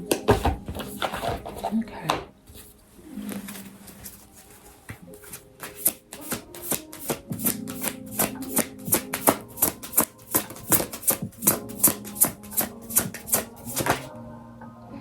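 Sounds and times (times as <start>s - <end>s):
soft background music: 0.0s - 15.0s
cards being shuffled: 3.3s - 14.1s.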